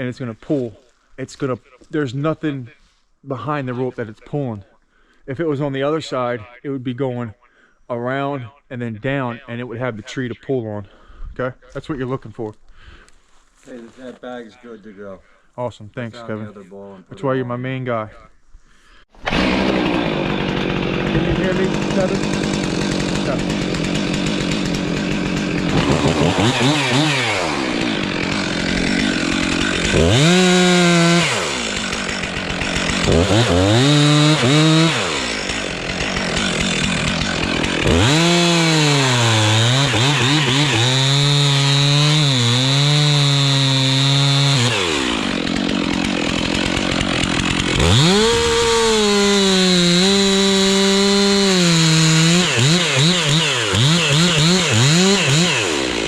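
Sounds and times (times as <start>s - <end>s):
chainsaw revving and cutting wood: 19.1s - 56.0s.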